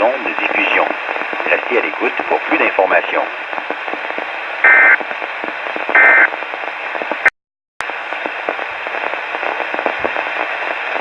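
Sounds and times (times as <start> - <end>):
radio static hiss: 0.0 - 11.0
digital data buzzing burst: 4.6 - 5.0, 6.0 - 6.3.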